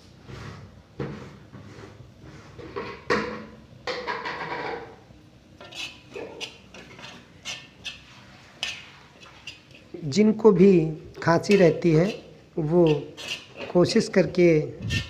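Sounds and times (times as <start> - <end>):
metal spoon scraping pan: 5.6 - 14.2, 14.8 - 15.0.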